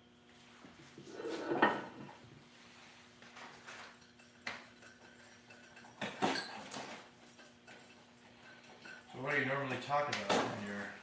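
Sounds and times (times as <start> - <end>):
tools and metal parts clattering: 3.6 - 9.2.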